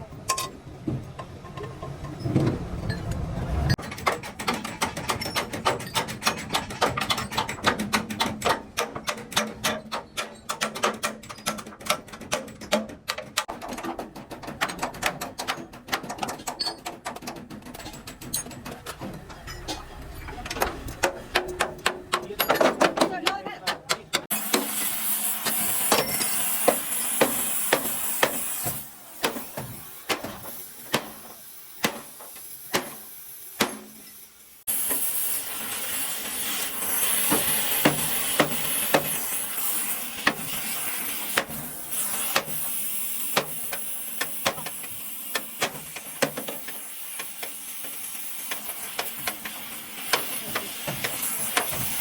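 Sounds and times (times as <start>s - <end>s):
steady hiss: 24.4s - 52.0s.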